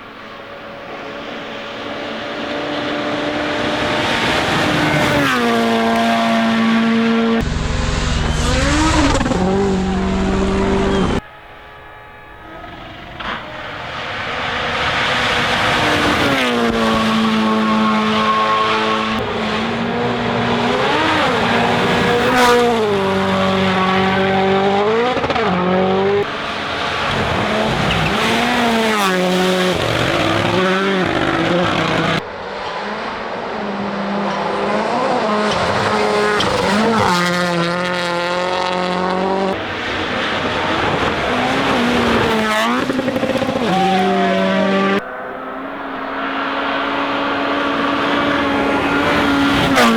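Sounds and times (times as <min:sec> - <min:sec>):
rally car engines revving: 0:00.0 - 0:49.9.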